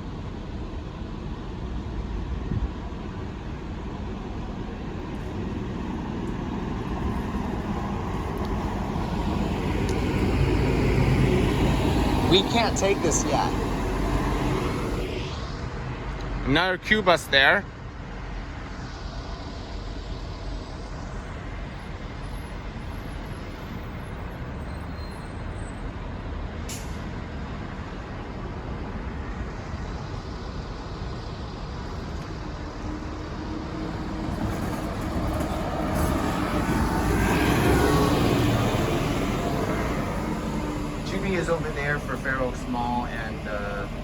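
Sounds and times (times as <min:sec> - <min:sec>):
bus engine hum approaching: 0:00.0 - 0:44.0
bus engines and traffic noise: 0:00.0 - 0:44.0
air brake hiss: 0:26.7 - 0:27.1.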